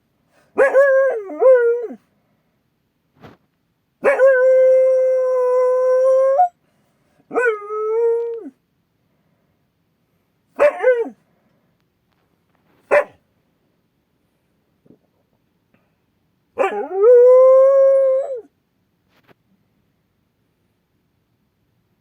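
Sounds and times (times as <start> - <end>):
dog barking: 0.6 - 0.9, 4.0 - 4.4, 10.6 - 11.2, 12.9 - 13.2, 16.6 - 16.8
dog howling: 4.0 - 6.5, 7.3 - 8.5, 10.6 - 11.2, 16.6 - 18.5.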